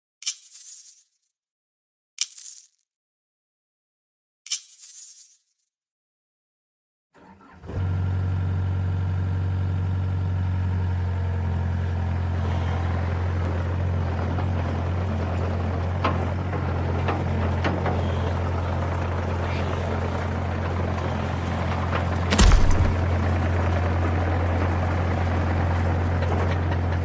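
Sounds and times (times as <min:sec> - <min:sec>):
tractor engine idling: 0:11.2 - 0:27.0.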